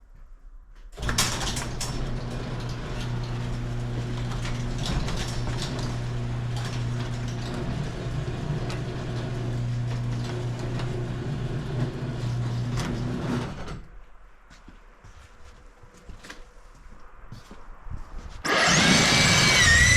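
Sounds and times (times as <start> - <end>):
snowblower motor hum: 18.5 - 19.9.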